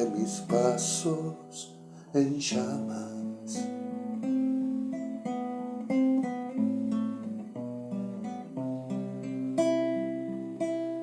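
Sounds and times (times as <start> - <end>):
person singing folk song: 0.0 - 4.9
acoustic guitar picking and strumming: 0.0 - 11.0.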